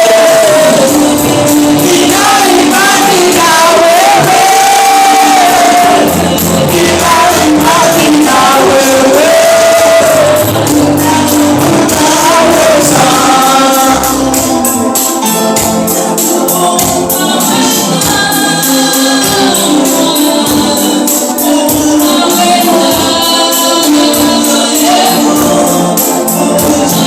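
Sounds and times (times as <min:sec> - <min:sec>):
band accompaniment with bass: 0:00.0 - 0:27.0
choir singing: 0:00.0 - 0:27.0
steady percussion beat: 0:00.0 - 0:27.0.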